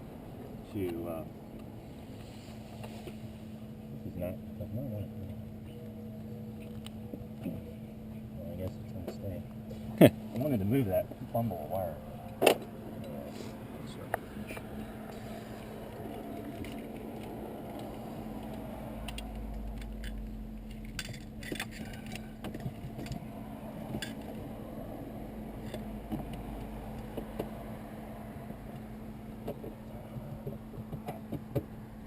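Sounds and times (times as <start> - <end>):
low hum: 0.0 - 30.7
wire connectors clicking and rattling: 15.9 - 23.2.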